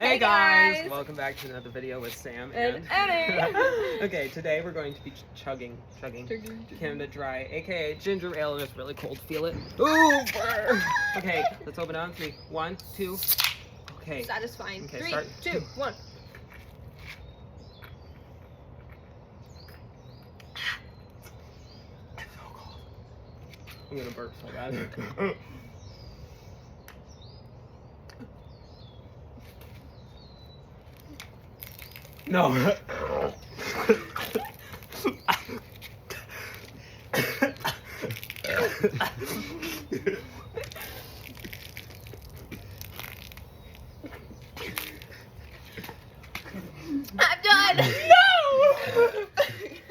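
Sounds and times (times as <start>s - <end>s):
people coughing: 33.6s - 36.3s, 37.1s - 40.4s
people burping: 37.1s - 40.4s.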